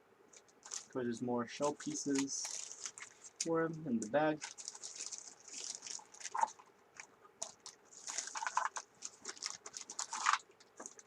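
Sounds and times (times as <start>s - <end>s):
plastic bag crinkling: 0.3s - 1.0s, 1.6s - 11.0s.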